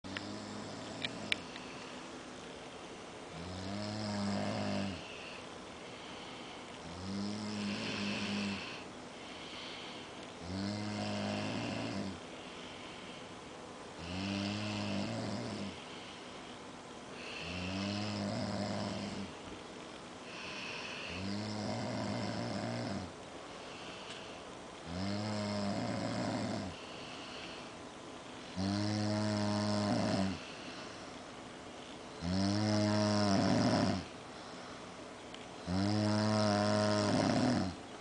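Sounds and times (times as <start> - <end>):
quiet breathing: 0.1 - 19.6, 20.2 - 38.0
people snoring: 3.4 - 5.4, 6.8 - 8.8, 10.4 - 12.2, 14.0 - 15.8, 17.2 - 19.3, 20.3 - 23.1, 24.9 - 26.8, 28.6 - 30.5, 32.2 - 34.1, 35.6 - 37.8.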